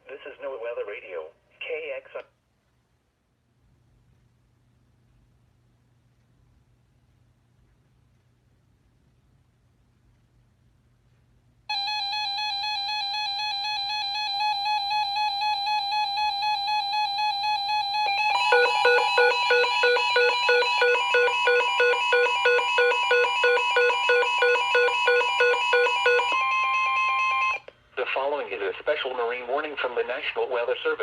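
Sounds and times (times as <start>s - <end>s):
steady buzzy tone: 11.7s - 26.4s
pulsing beep: 11.7s - 27.6s
high steady alarm tone: 11.7s - 27.7s.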